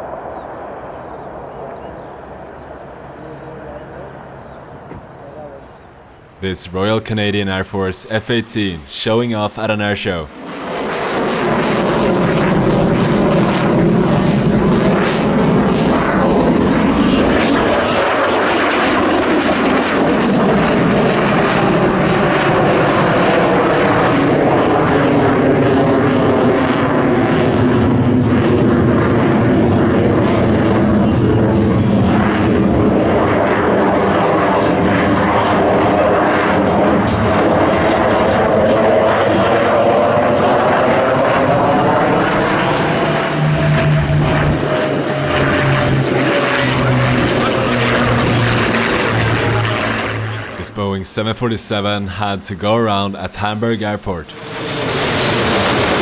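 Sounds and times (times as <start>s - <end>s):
jet engines running: 26.1s - 56.0s.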